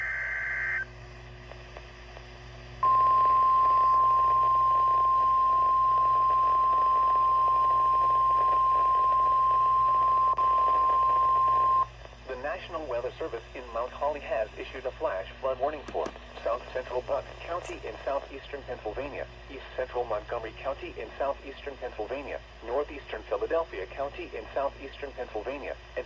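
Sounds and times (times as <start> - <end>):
digital data tones: 0.0 - 0.8
faint radio hiss: 0.0 - 26.0.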